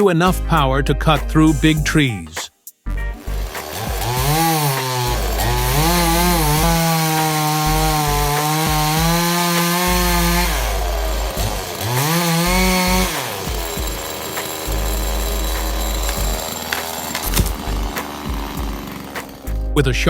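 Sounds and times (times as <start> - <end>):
background music with low beat: 0.0 - 7.0, 7.7 - 14.0, 17.5 - 20.0
chainsaw revving: 3.2 - 19.7.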